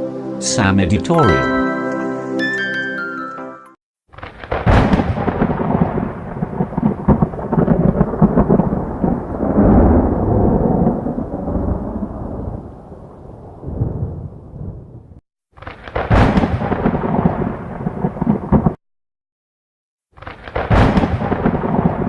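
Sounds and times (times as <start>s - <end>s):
thunder crack: 4.2s - 18.8s, 20.2s - 22.0s
rolling thunder rumble: 4.4s - 15.2s, 16.0s - 18.8s, 20.6s - 22.0s.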